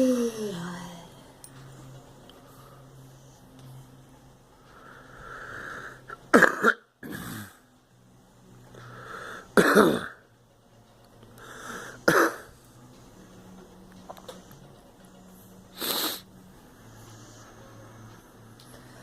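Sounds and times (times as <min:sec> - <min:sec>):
girl coughing: 0:06.4 - 0:07.4, 0:09.6 - 0:10.2, 0:12.1 - 0:12.5.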